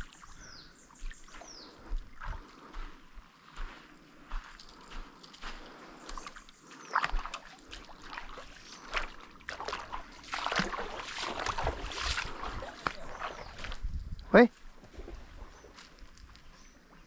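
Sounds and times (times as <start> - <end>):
water splashing around kayak: 4.6 - 17.0.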